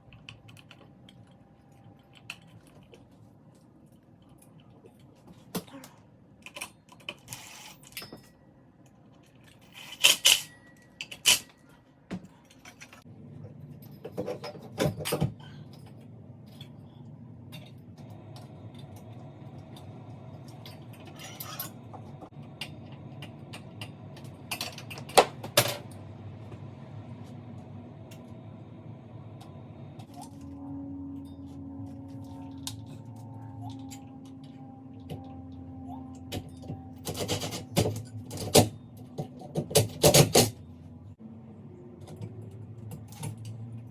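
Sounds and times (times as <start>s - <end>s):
steady low hum: 0.0s - 43.9s
metal hardware clinking: 6.4s - 11.7s.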